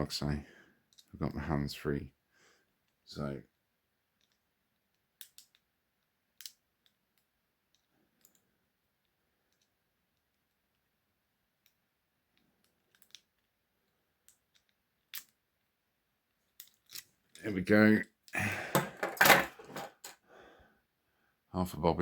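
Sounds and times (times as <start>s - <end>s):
metallic clicks of lock picking: 0.9s - 1.1s, 4.2s - 5.7s, 6.3s - 8.4s, 12.4s - 13.5s, 14.2s - 15.4s, 16.4s - 17.4s.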